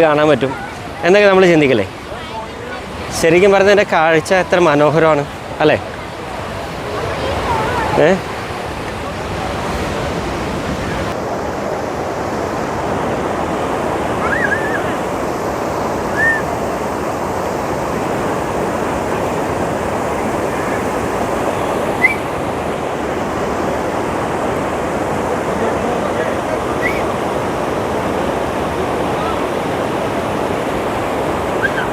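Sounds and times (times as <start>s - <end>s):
waterfall rushing: 0.0s - 31.9s
high chirps: 22.0s - 22.3s.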